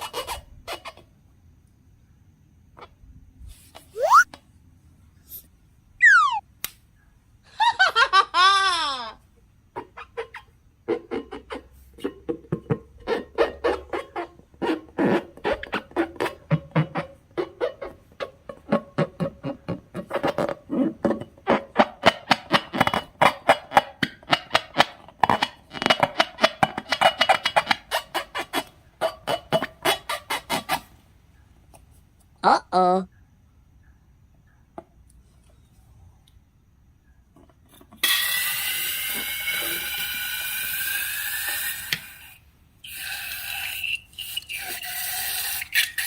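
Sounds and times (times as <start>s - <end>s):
short squeaky pulses: 3.9s - 4.4s, 6.0s - 6.4s
falling whistle-like glide: 4.0s - 4.3s, 6.0s - 6.4s
high-pitched laughter: 4.0s - 4.3s, 6.0s - 6.4s, 7.6s - 9.2s.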